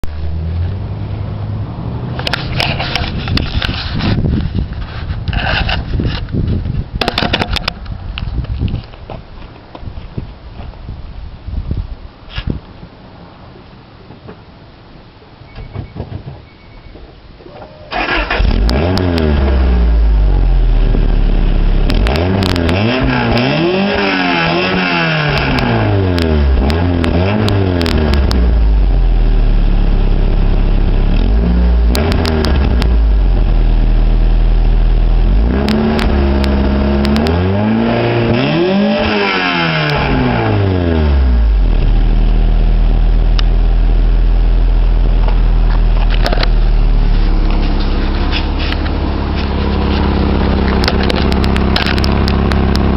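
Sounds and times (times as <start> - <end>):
car engine revving and idling: 0.0 - 4.6, 18.0 - 52.9.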